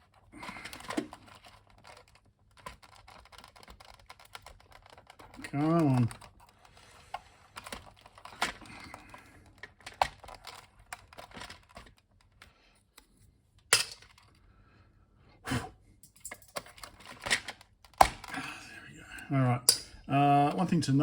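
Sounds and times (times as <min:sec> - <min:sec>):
plastic keycap clicks and rattles: 0:00.0 - 0:06.6, 0:07.5 - 0:12.5, 0:16.2 - 0:18.3.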